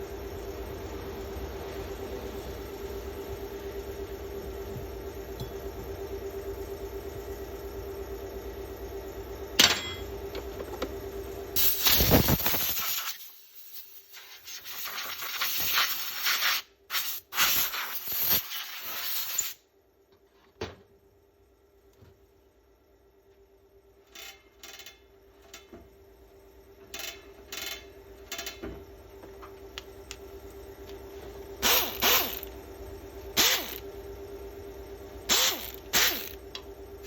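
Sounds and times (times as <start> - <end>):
machine hum with held tone: 0.0 - 15.4, 19.2 - 37.0
loud hissing bursts: 11.6 - 19.6.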